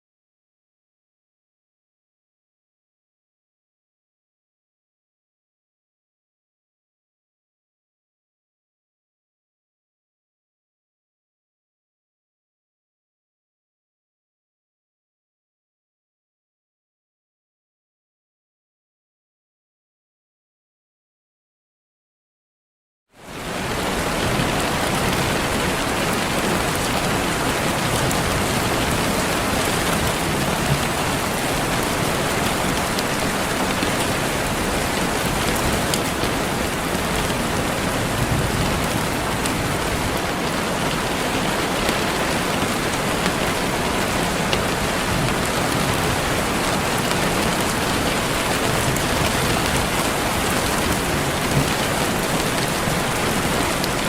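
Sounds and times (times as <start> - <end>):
steady rain falling: 23.2 - 54.0.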